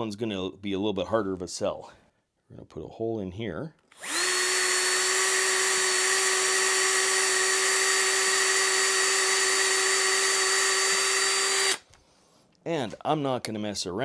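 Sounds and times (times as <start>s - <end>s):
electric drill boring wood: 3.9s - 11.8s.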